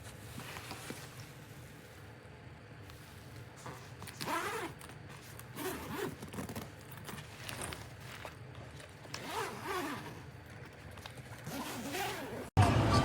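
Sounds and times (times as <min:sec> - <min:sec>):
zipper being pulled: 0:03.6 - 0:12.5.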